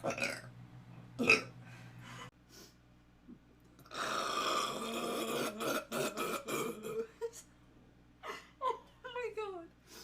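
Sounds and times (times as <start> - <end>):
long burp: 1.2 - 1.5, 3.9 - 7.1.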